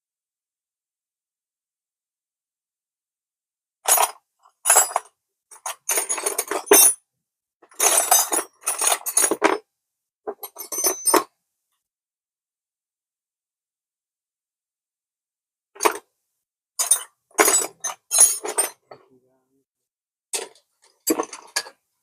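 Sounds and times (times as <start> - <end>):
metal tools clinking and rattling: 4.7 - 7.0, 7.7 - 9.6, 10.3 - 11.2, 16.8 - 19.0, 20.4 - 21.8.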